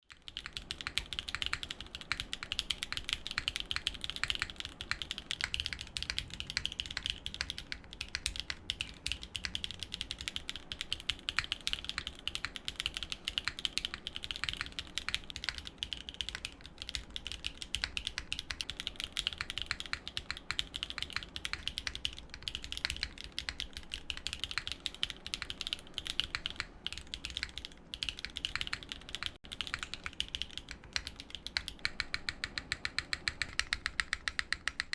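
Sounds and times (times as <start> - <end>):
fast typing on mechanical keyboard: 0.0 - 34.9.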